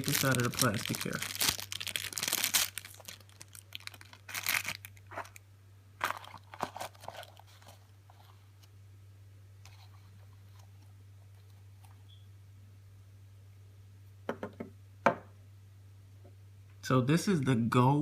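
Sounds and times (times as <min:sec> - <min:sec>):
plastic packaging crinkling: 0:00.0 - 0:05.4, 0:06.0 - 0:08.4.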